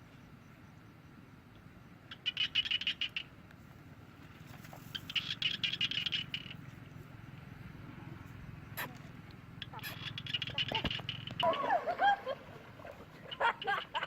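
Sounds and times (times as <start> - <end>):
animal rapid high chirps: 8.7 - 9.0, 9.6 - 11.7.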